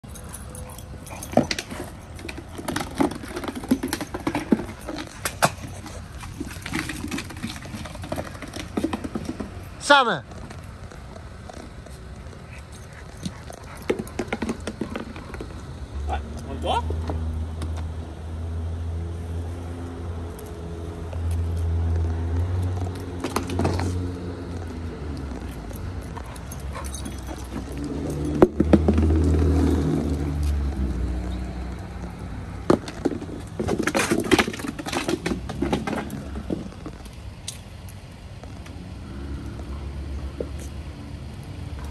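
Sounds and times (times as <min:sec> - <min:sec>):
bottle and ball clattering: 0:00.0 - 0:09.8, 0:12.7 - 0:15.7
puppy vocal sounds: 0:11.9 - 0:15.5.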